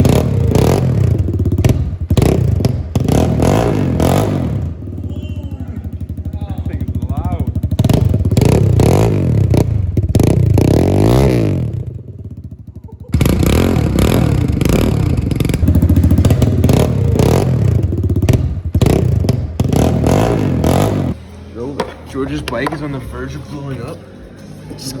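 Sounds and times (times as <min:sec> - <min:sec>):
dirt bike engine revving: 0:00.0 - 0:21.2.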